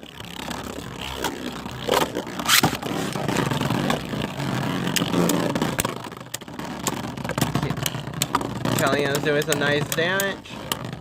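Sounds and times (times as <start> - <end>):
spinning tops whirring on floor: 0.0 - 11.0
spinning tops clacking together: 4.9 - 10.8.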